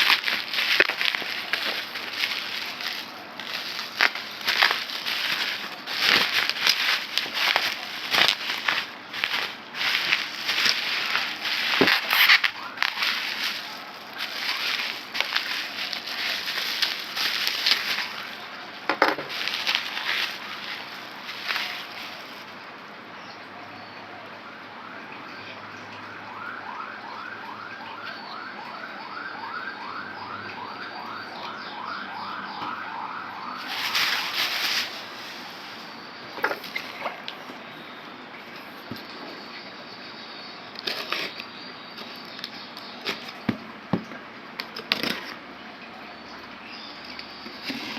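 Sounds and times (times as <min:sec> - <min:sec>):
packaging crinkling and rustling: 0:00.0 - 0:22.6, 0:32.2 - 0:37.9, 0:38.5 - 0:40.0, 0:40.8 - 0:45.4, 0:47.1 - 0:47.9.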